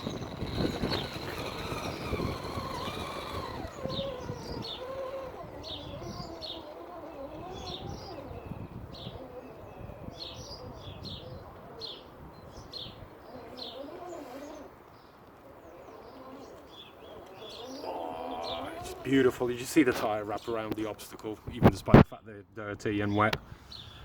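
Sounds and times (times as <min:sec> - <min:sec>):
electric motor whining: 0:00.0 - 0:09.6, 0:17.4 - 0:19.7
bird chirping: 0:00.0 - 0:19.7, 0:22.8 - 0:24.0.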